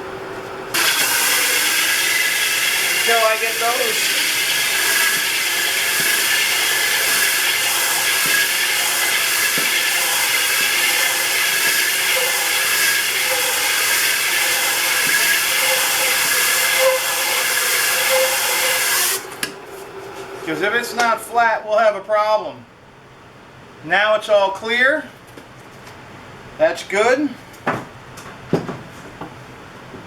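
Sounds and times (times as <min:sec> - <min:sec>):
sandpaper rasping on spinning wood: 0:00.8 - 0:19.3
faint lathe tones: 0:00.8 - 0:19.5.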